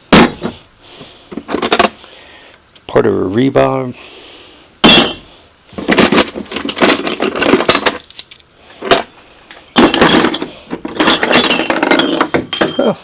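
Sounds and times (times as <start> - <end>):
metal tools clattering: 1.5 - 2.0, 4.9 - 9.1, 9.8 - 13.0.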